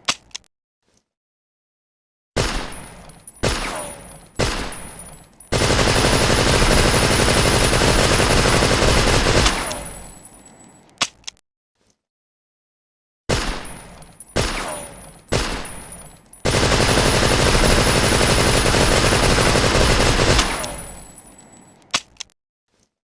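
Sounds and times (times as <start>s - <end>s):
submachine gun firing: 3.4s - 4.8s, 5.5s - 10.1s, 14.4s - 21.0s.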